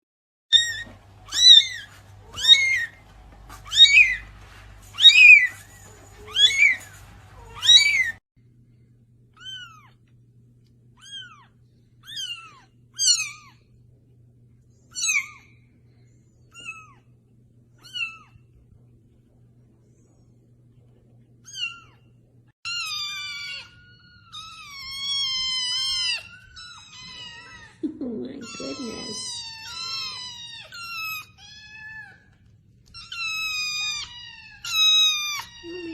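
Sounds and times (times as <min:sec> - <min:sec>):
cats meowing: 0:00.5 - 0:08.2, 0:09.4 - 0:10.0, 0:11.0 - 0:13.7, 0:14.9 - 0:15.5, 0:16.5 - 0:17.2, 0:17.8 - 0:18.6, 0:21.4 - 0:35.9.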